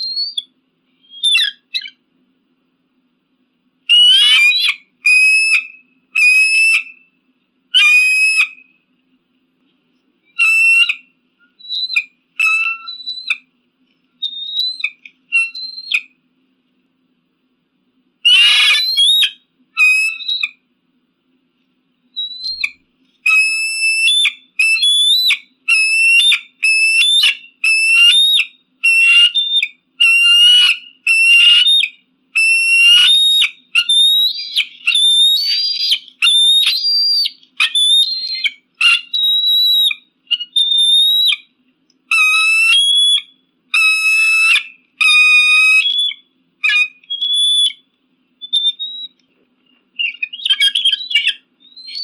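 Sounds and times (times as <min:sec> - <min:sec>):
eagle crying: 0:03.9 - 0:07.0, 0:07.8 - 0:08.6, 0:18.3 - 0:20.6, 0:23.3 - 0:41.5, 0:42.1 - 0:47.8.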